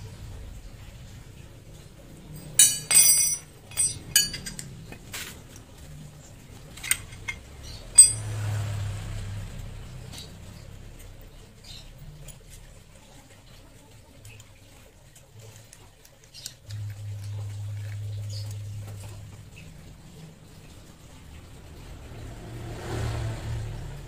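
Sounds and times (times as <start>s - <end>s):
metal tools clinking: 2.4s - 5.4s, 6.7s - 8.5s.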